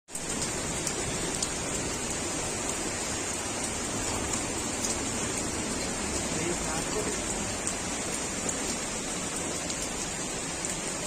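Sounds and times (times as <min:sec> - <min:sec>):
downpour hiss: 0:00.1 - 0:11.0
hailstones ticking: 0:00.1 - 0:11.0.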